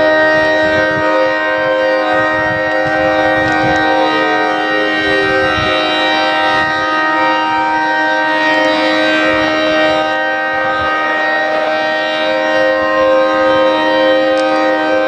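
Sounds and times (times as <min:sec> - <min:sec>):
tornado siren steady tone: 0:00.0 - 0:15.0
faint tone gliding downward: 0:02.0 - 0:07.4.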